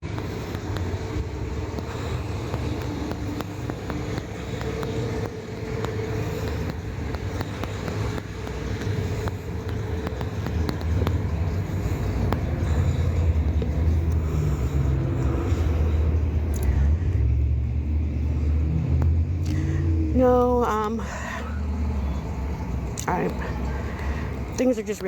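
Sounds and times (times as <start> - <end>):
road traffic rumble: 0.0 - 25.0
faint clicks and taps: 0.1 - 17.4, 18.8 - 19.7.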